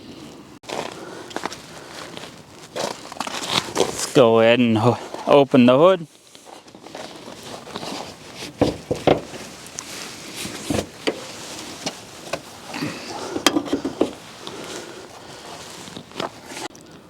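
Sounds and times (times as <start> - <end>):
car hood clicking and rattling: 8.6 - 9.5, 10.4 - 12.5, 13.1 - 14.2.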